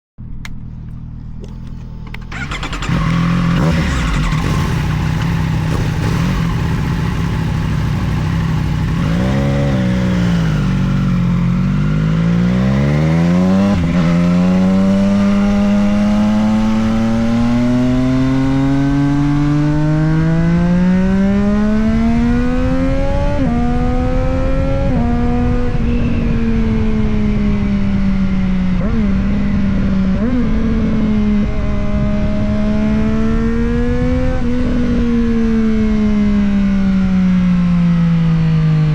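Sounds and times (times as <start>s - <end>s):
motorcycle engine and exhaust: 0.2s - 38.9s.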